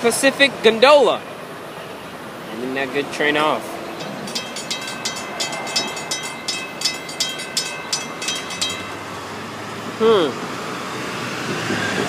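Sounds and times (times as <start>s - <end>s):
high ringing from wheels: 3.4s - 10.0s
train wheels clicking over rail joints: 4.0s - 9.2s.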